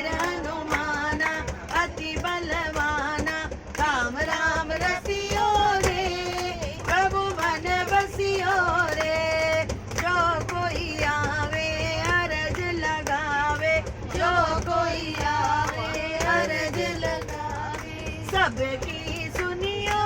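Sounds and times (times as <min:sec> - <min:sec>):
devotional song with percussion: 0:00.0 - 0:20.0.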